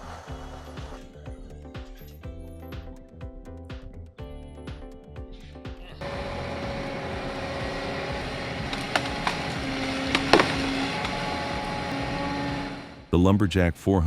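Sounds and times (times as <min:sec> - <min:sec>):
tree-felling machine running: 0:06.0 - 0:13.2.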